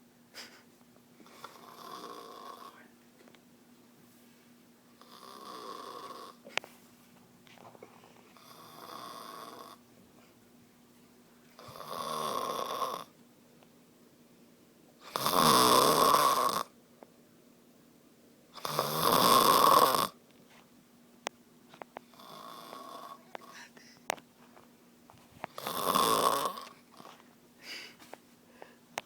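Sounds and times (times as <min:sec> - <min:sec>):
person snoring: 0:01.2 - 0:02.8, 0:05.0 - 0:06.4, 0:08.4 - 0:09.8, 0:11.6 - 0:13.1, 0:15.0 - 0:16.7, 0:18.6 - 0:20.2, 0:22.1 - 0:23.8, 0:25.6 - 0:26.8.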